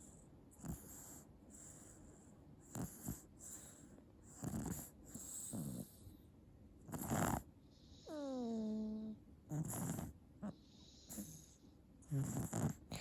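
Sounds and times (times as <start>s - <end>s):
baby snoring: 8.0s - 11.5s, 12.1s - 13.0s.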